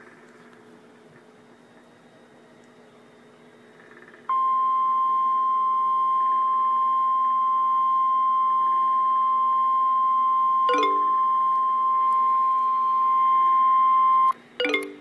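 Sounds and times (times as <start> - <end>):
faint hum: 0.0 - 15.0
loud steady high tone: 4.3 - 15.0.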